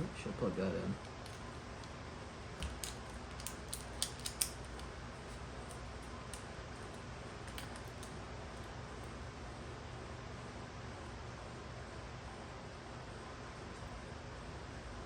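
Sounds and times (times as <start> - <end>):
low steady hum: 0.0 - 15.0
laptop parts clicking: 2.6 - 8.2.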